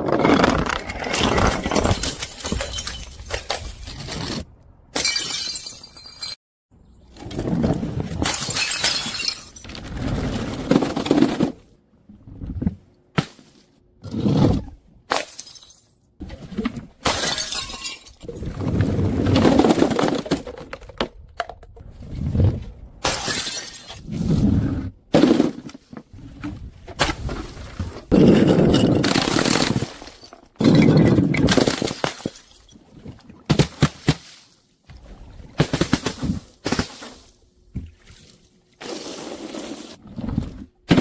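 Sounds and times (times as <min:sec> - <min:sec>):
glass bottles shattering: 0:01.2 - 0:04.1, 0:05.0 - 0:06.4, 0:08.2 - 0:09.7, 0:15.2 - 0:15.9, 0:17.1 - 0:18.2, 0:23.1 - 0:24.0, 0:28.2 - 0:32.7.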